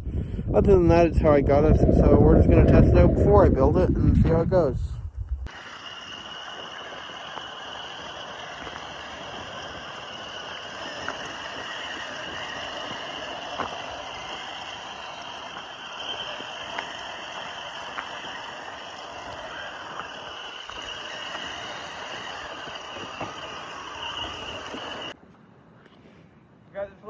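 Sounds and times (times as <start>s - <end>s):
tyre and drivetrain noise: 5.1s - 25.2s
rc car motor whine: 5.5s - 25.2s.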